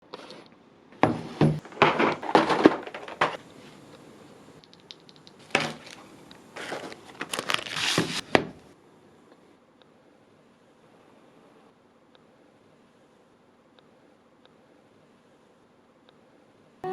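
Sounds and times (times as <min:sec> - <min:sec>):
packaging crinkling: 0:04.7 - 0:08.4.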